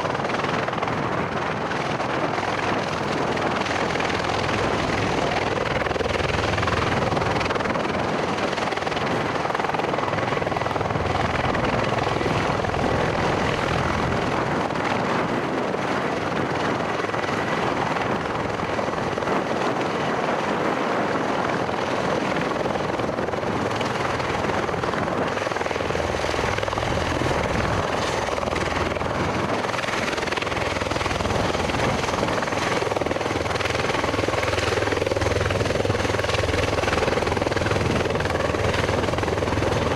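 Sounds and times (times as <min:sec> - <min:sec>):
aircraft rotors and engines running: 0:00.0 - 0:39.9
wind on microphone: 0:00.0 - 0:39.9
low rotor throb: 0:03.0 - 0:07.7, 0:09.6 - 0:14.7, 0:22.3 - 0:39.9.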